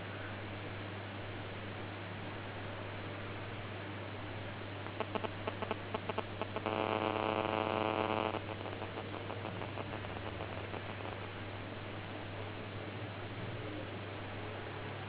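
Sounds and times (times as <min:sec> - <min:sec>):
phone line clicks: 0:04.9 - 0:11.3
long ringback tone: 0:05.0 - 0:11.3.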